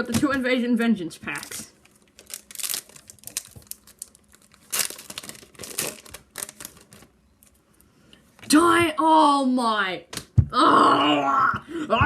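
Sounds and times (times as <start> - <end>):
foil wrapper tearing and crinkling: 1.3 - 7.6.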